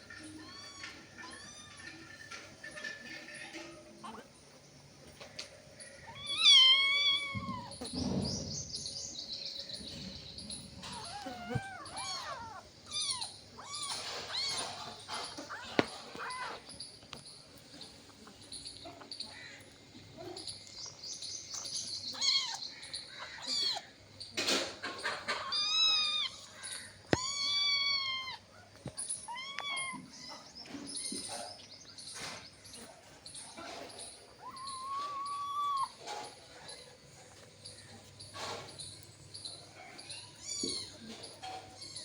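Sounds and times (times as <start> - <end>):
cat mewing: 6.1 - 7.8, 10.8 - 16.7.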